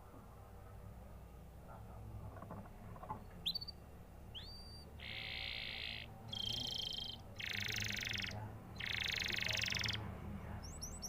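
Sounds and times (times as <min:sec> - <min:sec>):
canary singing: 0:03.0 - 0:11.0.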